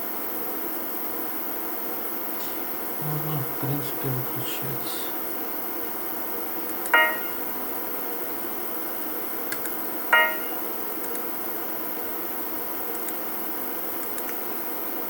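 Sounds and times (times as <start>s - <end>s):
short electronic chimes: 7.0s - 7.4s, 10.2s - 10.6s.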